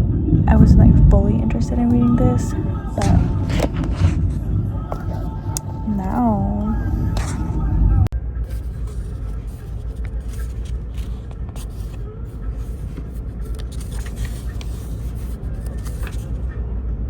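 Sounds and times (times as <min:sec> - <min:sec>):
faint clicks and rustles: 0:08.5 - 0:16.5.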